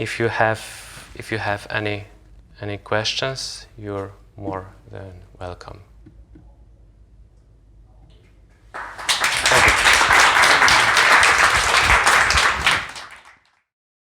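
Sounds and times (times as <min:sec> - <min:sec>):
audience applauding: 0:08.8 - 0:13.6.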